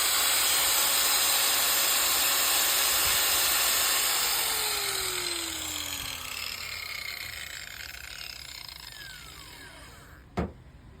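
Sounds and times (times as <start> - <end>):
angle grinder spinning down: 2.3 - 10.3.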